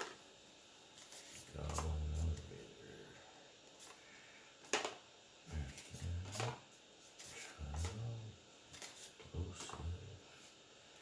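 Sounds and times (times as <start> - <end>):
man's voice murmuring: 1.5 - 3.1, 5.5 - 6.6, 7.5 - 8.4, 9.2 - 10.3.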